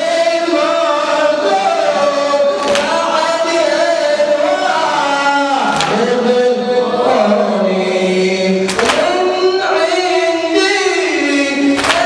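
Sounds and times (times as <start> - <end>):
men singing a slow lament: 0.0 - 12.0
sharp chest-beating slaps: 2.6 - 2.9, 8.7 - 9.1, 11.8 - 12.0.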